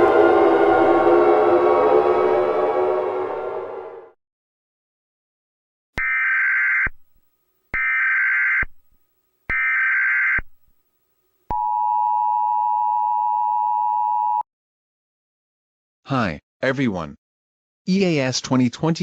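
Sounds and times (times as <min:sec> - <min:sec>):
buzzy data-header squawks: 0:06.0 - 0:07.0, 0:09.5 - 0:10.4.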